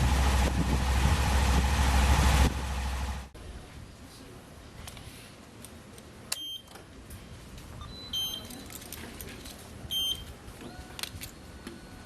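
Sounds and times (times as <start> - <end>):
low steady background noise: 3.2 - 12.0.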